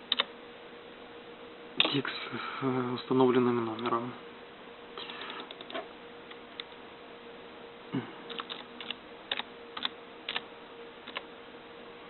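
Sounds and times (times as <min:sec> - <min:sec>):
faint steady hum: 0:00.0 - 0:12.0
keyboard keys clicking: 0:08.3 - 0:10.4.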